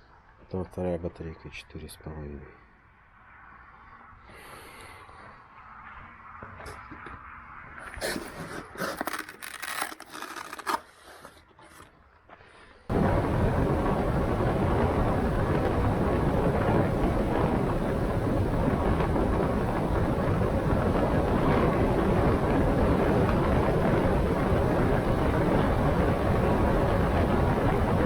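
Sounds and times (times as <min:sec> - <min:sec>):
handling clicks and scrapes: 0:07.8 - 0:12.3
wind on microphone: 0:12.9 - 0:28.0.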